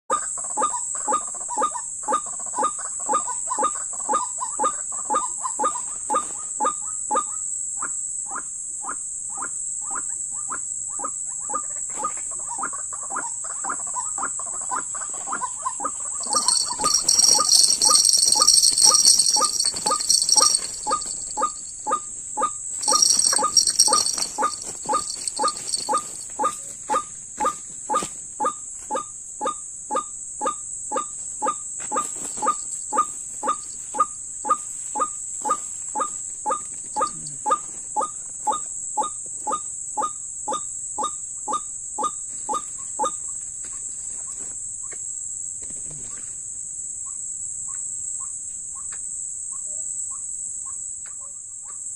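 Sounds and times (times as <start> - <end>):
high insect whine: 16.2 - 22.1, 22.8 - 26.5.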